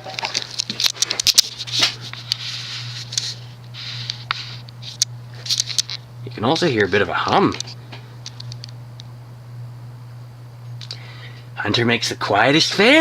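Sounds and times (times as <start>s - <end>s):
scratchy clicks and rustles: 0.0s - 9.1s
ceiling fan motor humming: 0.0s - 13.0s.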